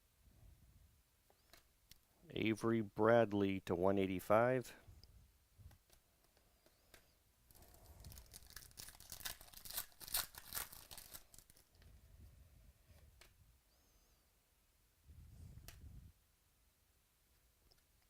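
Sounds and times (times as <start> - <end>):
wrapper tearing and crinkling: 7.5 - 11.7.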